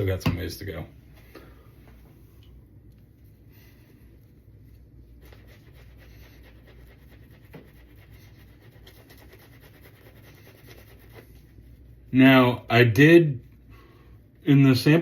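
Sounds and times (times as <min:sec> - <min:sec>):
shaving brush swishing lather: 0:04.7 - 0:12.2.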